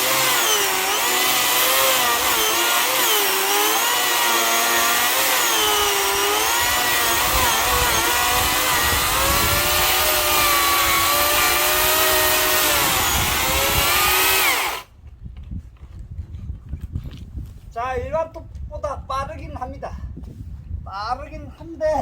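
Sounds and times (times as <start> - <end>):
electric chainsaw cutting wood: 0.0 - 14.9.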